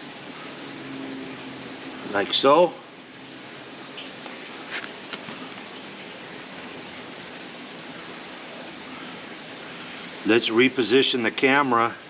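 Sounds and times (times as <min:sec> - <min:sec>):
steady background hiss: 0:00.0 - 0:12.0
faint rustles and ticks: 0:04.0 - 0:05.8.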